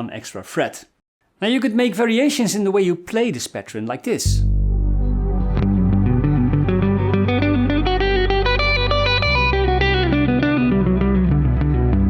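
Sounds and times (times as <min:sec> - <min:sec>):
backing chord and bass: 0:04.3 - 0:12.0
electric guitar arpeggio: 0:04.4 - 0:12.0.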